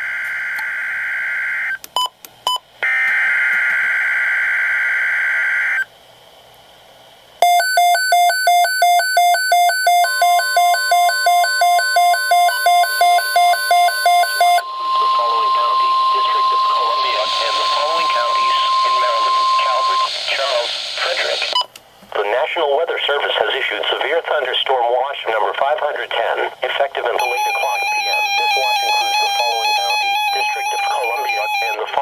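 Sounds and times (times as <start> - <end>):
steady single-pitch alarm tone: 7.4 - 21.5, 27.2 - 31.8
buzzing digital data tones: 7.4 - 21.6
rapid electronic alert beeps: 7.4 - 21.6, 27.2 - 32.0.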